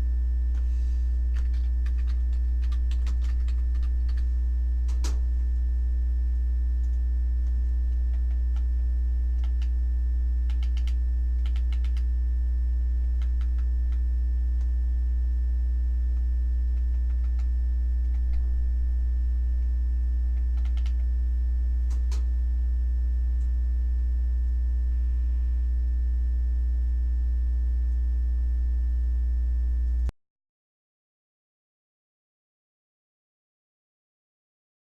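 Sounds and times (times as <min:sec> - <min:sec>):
faint steady tones: 0:00.0 - 0:30.1
low hum: 0:00.0 - 0:30.1
keyboard and mouse clicks: 0:01.3 - 0:05.2, 0:06.8 - 0:08.7, 0:09.4 - 0:09.8, 0:10.5 - 0:12.1, 0:13.1 - 0:14.0, 0:16.2 - 0:18.5, 0:20.3 - 0:21.1, 0:21.9 - 0:22.3.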